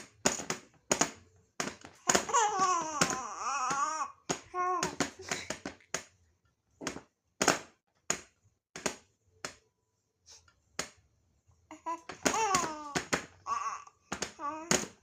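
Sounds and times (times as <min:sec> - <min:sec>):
baby vocalizing: 0:11.7 - 0:14.8.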